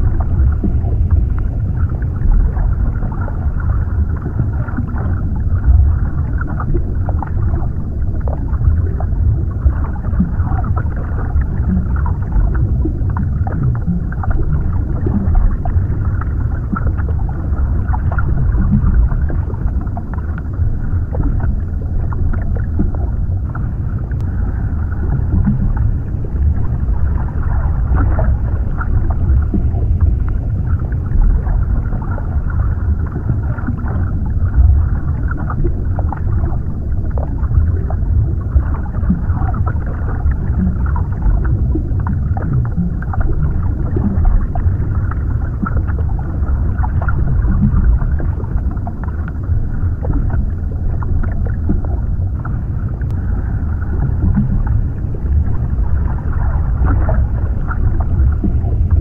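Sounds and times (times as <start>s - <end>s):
deep muffled underwater rumble: 0.0s - 59.0s.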